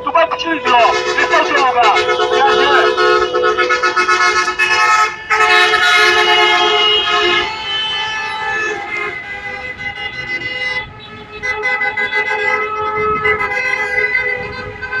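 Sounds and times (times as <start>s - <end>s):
horns honking in long blasts: 0.0s - 15.0s.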